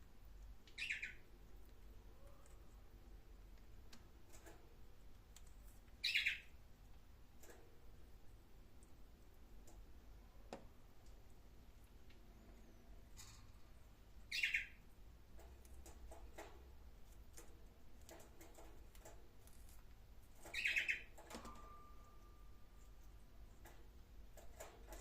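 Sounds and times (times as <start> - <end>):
bird trilled calls: 0.8 - 1.2, 6.0 - 6.5, 14.3 - 14.8, 20.5 - 21.1
faint scattered clicking: 8.7 - 12.3.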